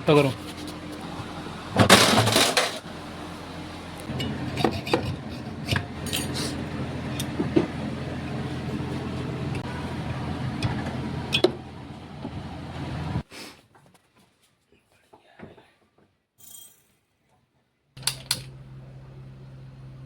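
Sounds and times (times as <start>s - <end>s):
electrical motor hum: 0.0s - 13.2s, 18.0s - 20.0s.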